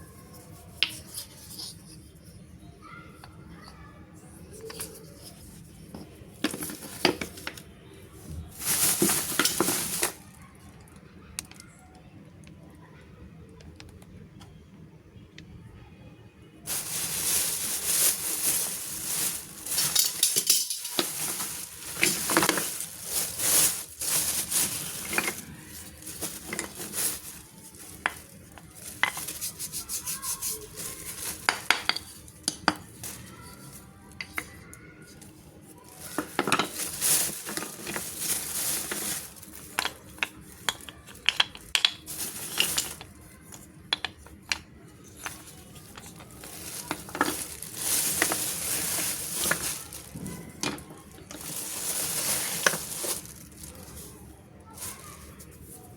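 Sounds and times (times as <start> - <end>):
packaging crinkling: 4.6 - 7.6, 8.5 - 10.4, 16.7 - 54.1.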